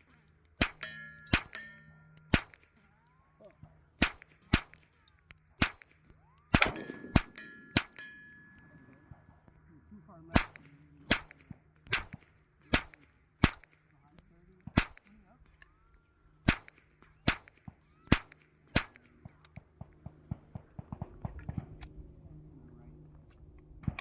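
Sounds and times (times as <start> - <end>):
silenced gun shots: 0.0 - 2.9, 4.0 - 9.0, 10.3 - 13.9, 14.6 - 15.2, 16.4 - 21.8.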